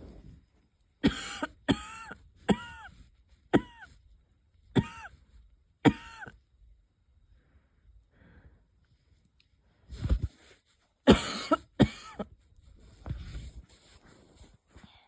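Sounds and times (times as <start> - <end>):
person coughing wheezily: 1.0 - 2.9, 3.5 - 3.9, 4.8 - 5.1, 5.8 - 6.4, 11.0 - 12.3.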